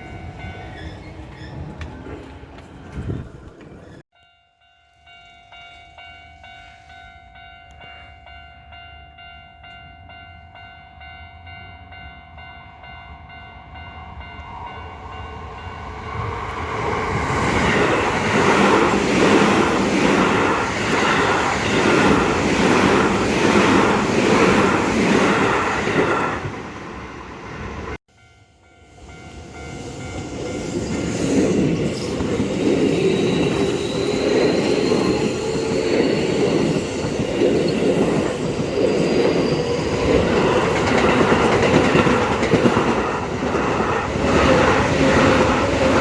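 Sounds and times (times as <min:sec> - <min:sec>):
level crossing warning bell: 0:00.0 - 0:00.9, 0:04.1 - 0:16.1, 0:28.1 - 0:30.9
loud train noise: 0:00.0 - 0:04.0, 0:05.0 - 0:46.0.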